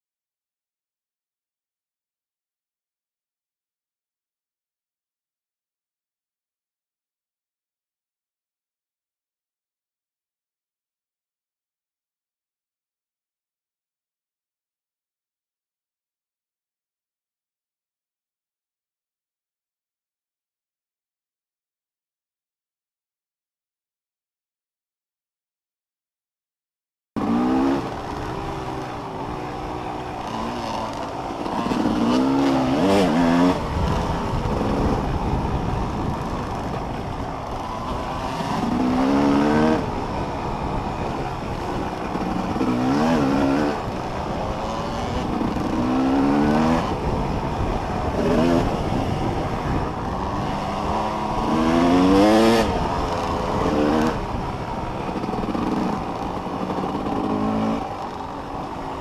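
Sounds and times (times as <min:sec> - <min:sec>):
motorcycle engine revving: 0:27.2 - 0:59.0.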